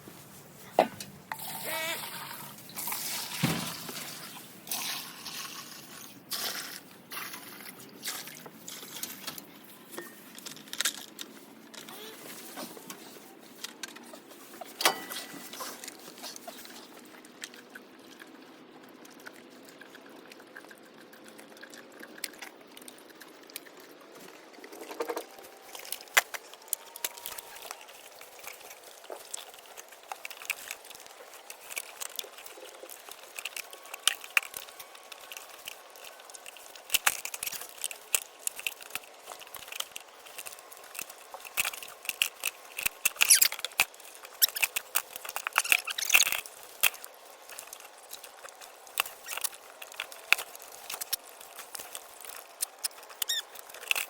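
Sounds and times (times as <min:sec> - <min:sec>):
milk sloshing and gurgling: 0:01.3 - 0:09.8.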